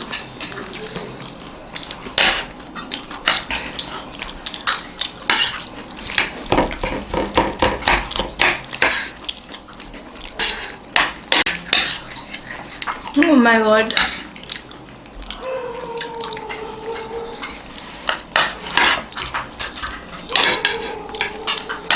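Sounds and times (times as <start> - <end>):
spoons clinking on plates: 16.1 - 21.9.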